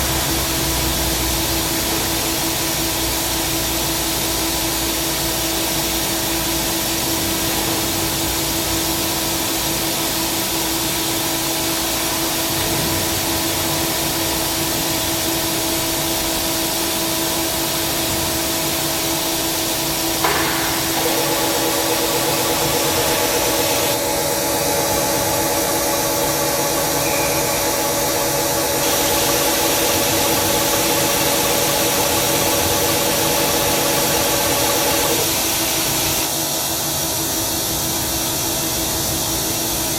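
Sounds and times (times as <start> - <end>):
lathe whine: 0.0 - 37.3
machine hiss: 0.0 - 39.9
higher machine whine: 11.6 - 36.4.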